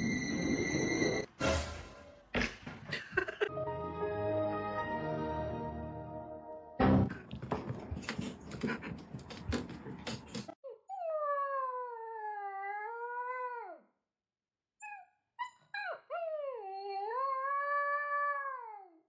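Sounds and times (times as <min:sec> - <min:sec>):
dog yipping: 0:14.8 - 0:17.4.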